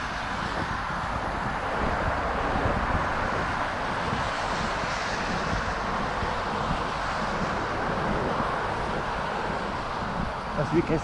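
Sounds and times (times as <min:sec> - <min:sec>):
road traffic: 0:00.0 - 0:11.0
wind on microphone: 0:00.0 - 0:11.0.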